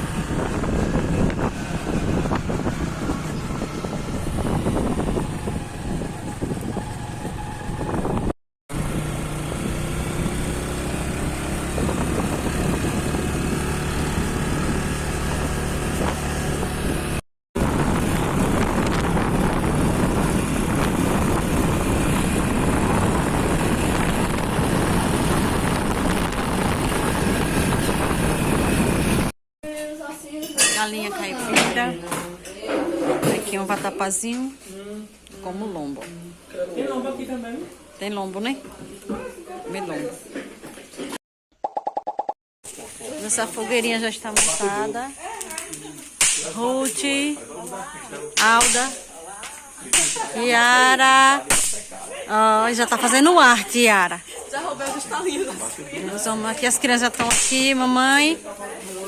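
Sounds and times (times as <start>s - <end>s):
vehicle engine and road noise: 0.0s - 29.3s.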